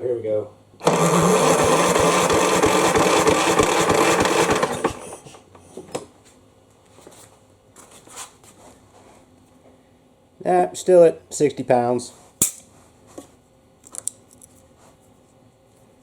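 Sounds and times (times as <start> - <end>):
electric starter cranking engine: 0.8 - 5.4.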